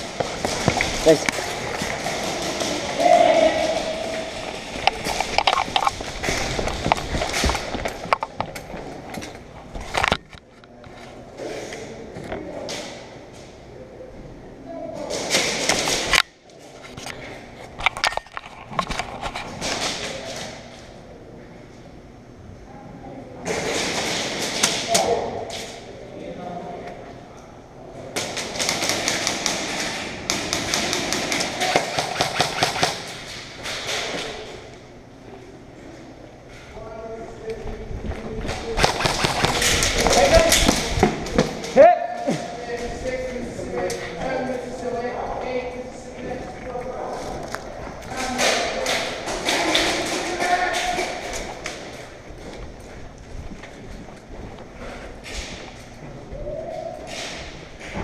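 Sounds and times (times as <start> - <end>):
gear clattering with clicks and knocks: 4.4 - 11.0
airsoft gun bursts: 30.3 - 33.1.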